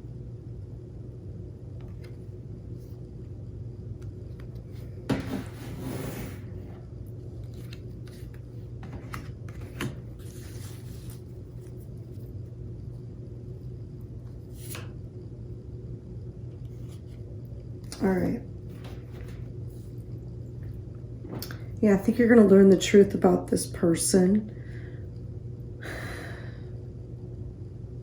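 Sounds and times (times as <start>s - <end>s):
low electrical hum: 0.0s - 28.0s
cards clicking and rustling: 7.4s - 11.8s.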